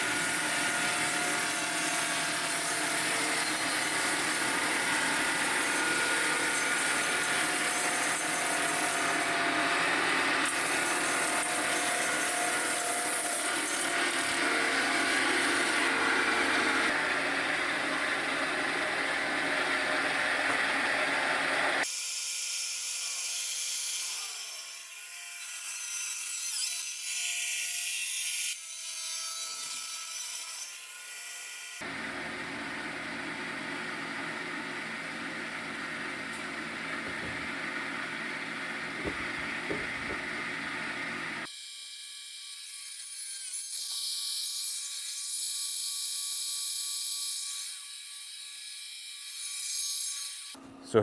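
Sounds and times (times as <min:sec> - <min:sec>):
saw blade cutting log: 0:00.0 - 0:20.7, 0:38.9 - 0:40.6.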